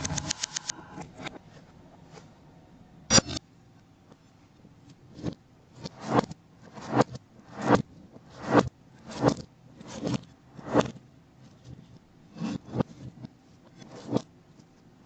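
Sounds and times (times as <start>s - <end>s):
reversed kitchen utensil strokes: 5.8s - 11.0s.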